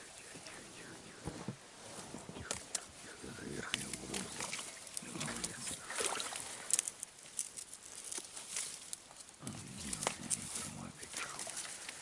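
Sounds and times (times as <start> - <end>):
frogs croaking: 2.4 - 7.4
water patter: 2.4 - 12.0.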